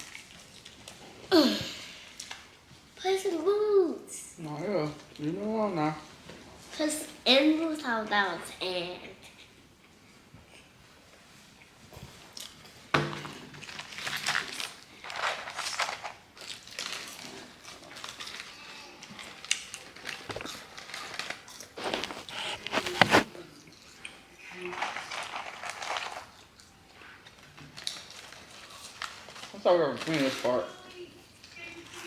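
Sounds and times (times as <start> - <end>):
rustling and clinking objects: 11.8 - 23.4.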